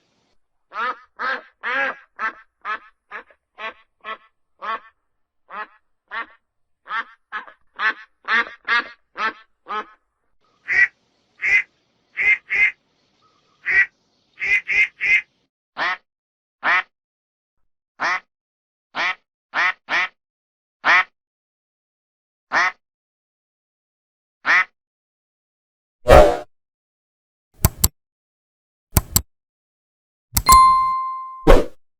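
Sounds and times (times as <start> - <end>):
duck quacking: 0.7 - 10.0, 10.7 - 12.8, 13.6 - 16.0, 16.6 - 16.9, 18.0 - 18.2, 19.0 - 20.1.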